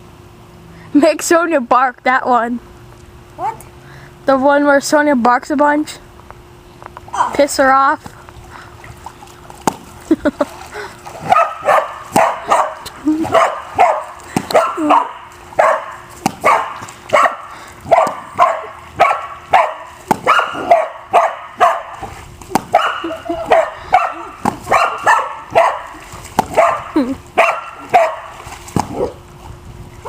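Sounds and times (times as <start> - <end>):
dog barking: 11.2 - 22.0, 22.7 - 26.0, 26.6 - 28.3.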